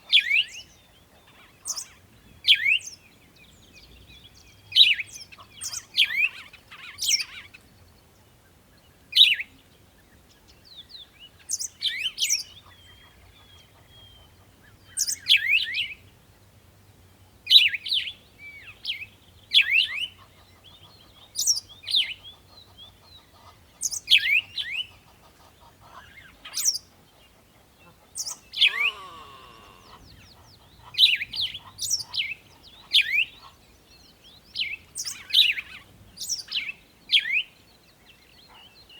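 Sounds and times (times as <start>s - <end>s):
songbirds singing: 0.0s - 38.9s
lower falling bird call: 28.5s - 30.2s.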